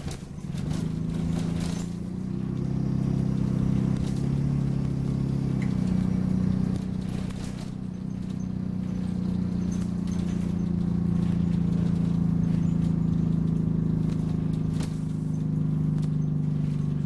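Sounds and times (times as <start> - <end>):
bus engine drone: 0.0 - 17.0
faint high squeaks: 5.5 - 17.0.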